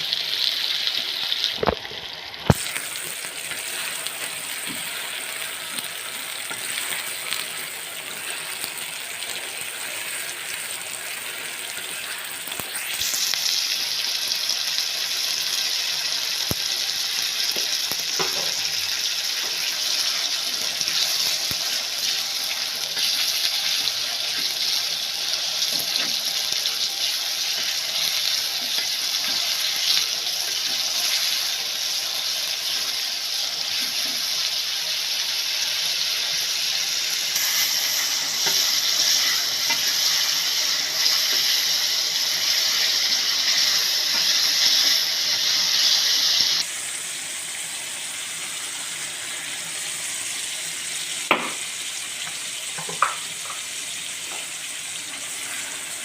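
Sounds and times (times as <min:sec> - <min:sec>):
tap water running: 0:01.0 - 0:06.6, 0:17.5 - 0:19.6, 0:51.2 - 0:56.0.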